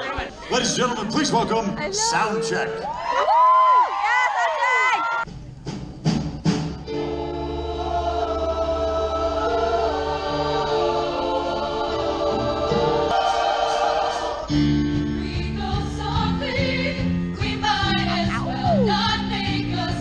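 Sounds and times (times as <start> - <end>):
instrumental backing music: 5.3 - 20.0
choir singing in harmony: 6.8 - 20.0.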